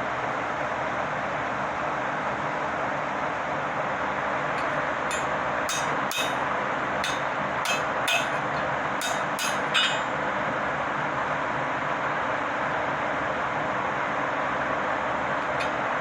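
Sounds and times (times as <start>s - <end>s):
hammer striking metal: 4.6s - 6.4s, 7.0s - 10.2s.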